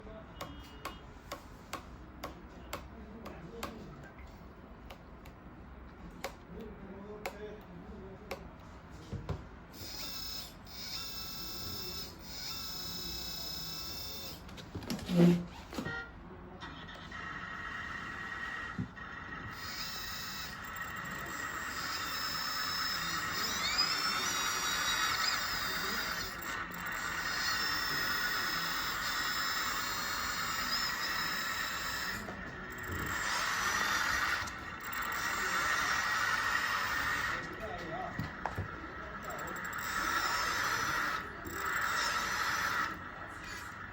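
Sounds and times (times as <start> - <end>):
hydraulic pump high whine: 9.7 - 16.0, 17.1 - 43.9
sharp even ticking: 25.3 - 37.4, 39.2 - 43.0.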